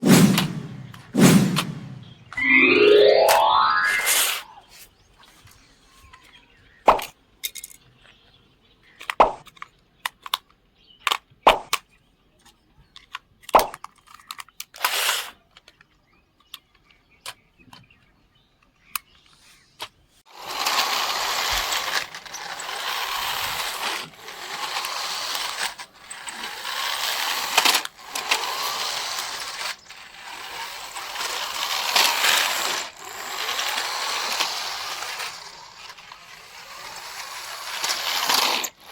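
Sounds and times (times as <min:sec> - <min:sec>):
plastic toy parts clicking: 0:09.0 - 0:11.8, 0:12.4 - 0:15.8
toy car motor whirring: 0:14.7 - 0:15.4, 0:20.4 - 0:38.9.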